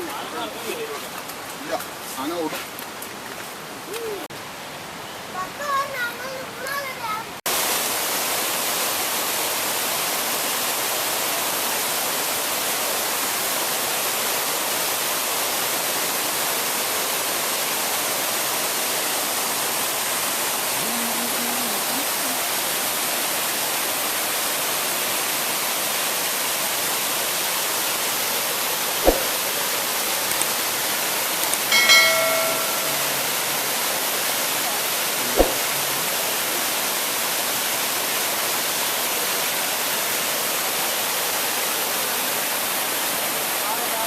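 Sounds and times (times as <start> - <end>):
waterfall rushing: 3.1 - 44.0
short knock: 29.0 - 29.4.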